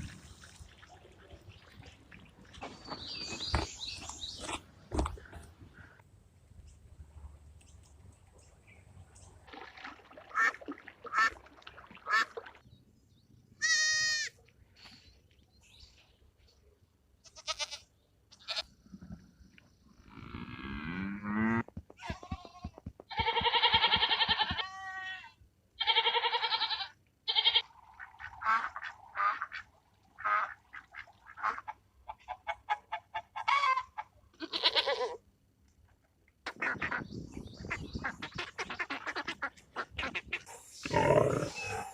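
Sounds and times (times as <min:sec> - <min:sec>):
farm animal calls: 0:36.5 - 0:41.9.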